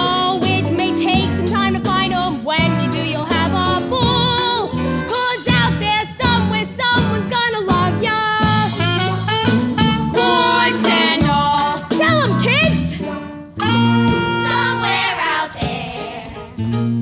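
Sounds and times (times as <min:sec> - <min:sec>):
jazzy band with bass and drums: 0:00.0 - 0:17.0
voices singing a show tune: 0:10.1 - 0:12.8, 0:14.3 - 0:16.5.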